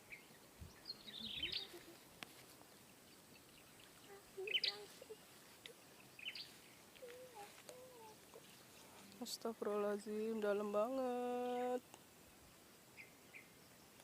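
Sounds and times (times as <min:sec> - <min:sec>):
faint outdoor background: 0:00.0 - 0:14.0
high bird chirps: 0:00.1 - 0:01.8, 0:03.4 - 0:04.9.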